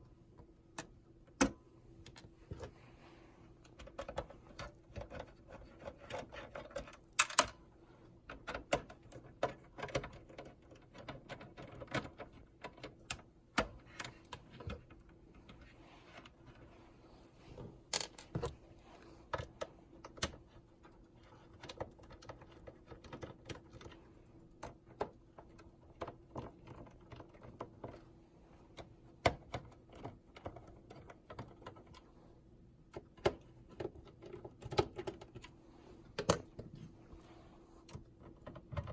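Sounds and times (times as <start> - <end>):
faint steady hum: 0.0 - 38.9
plastic and metal parts clicking: 3.6 - 7.6, 8.2 - 16.7, 19.3 - 28.0, 28.8 - 32.1, 32.9 - 36.7.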